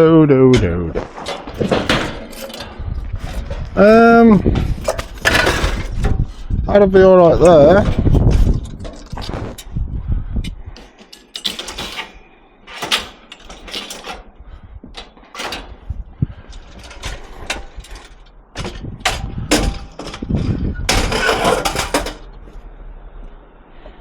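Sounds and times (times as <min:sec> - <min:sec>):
scrap metal clanking: 0:00.5 - 0:09.8, 0:10.7 - 0:22.4
rattling metal scrape: 0:00.5 - 0:09.9, 0:10.6 - 0:22.4.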